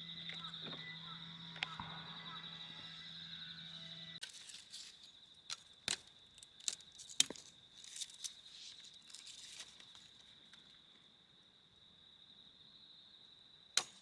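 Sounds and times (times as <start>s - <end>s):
steady high-pitched tone: 0.0s - 4.2s.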